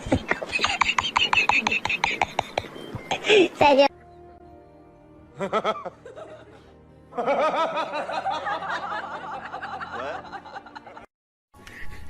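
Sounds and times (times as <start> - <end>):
background music: 0.0 - 12.0
high-pitched laughter of several voices: 0.4 - 2.7.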